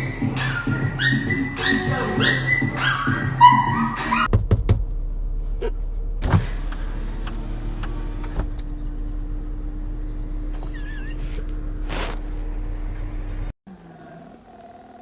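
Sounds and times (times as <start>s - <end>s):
low mechanical hum: 4.9s - 13.8s.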